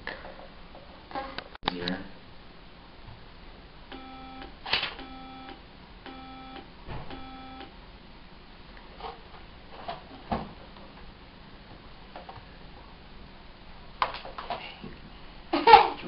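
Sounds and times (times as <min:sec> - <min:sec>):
buzzy test beeps: 0:03.9 - 0:07.7.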